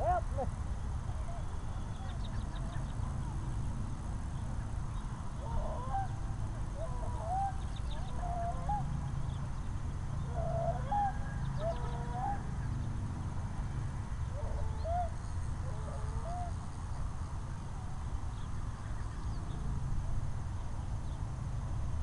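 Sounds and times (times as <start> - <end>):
birds calling: 4.4 - 13.0.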